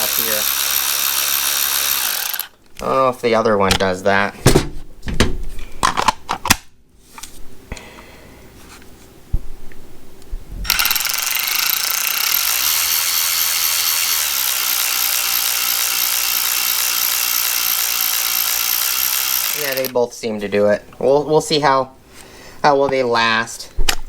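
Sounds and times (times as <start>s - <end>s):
electric ratchet motor running: 0.0s - 2.6s, 10.6s - 19.9s.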